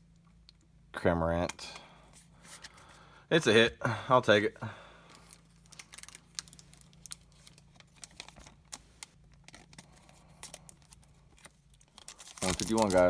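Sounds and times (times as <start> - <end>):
low steady hum: 0.0 - 13.0
cards clicking and rustling: 5.1 - 13.0.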